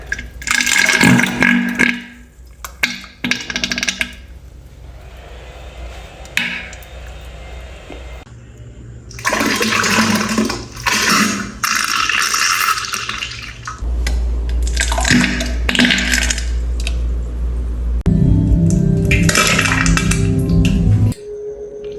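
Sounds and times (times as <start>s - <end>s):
toilet flushing: 0.0s - 8.2s, 9.1s - 13.8s, 19.1s - 20.3s.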